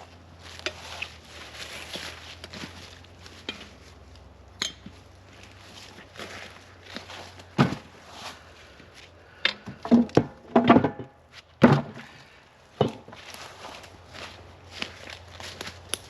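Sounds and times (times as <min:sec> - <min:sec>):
footsteps: 0:00.0 - 0:10.2, 0:11.3 - 0:16.0
wood knocking: 0:09.5 - 0:12.0.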